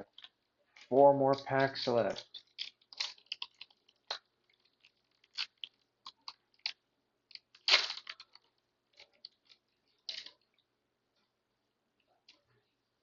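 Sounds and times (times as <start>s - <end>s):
foil wrapper crinkling and tearing: 2.1s - 6.8s, 7.4s - 9.6s.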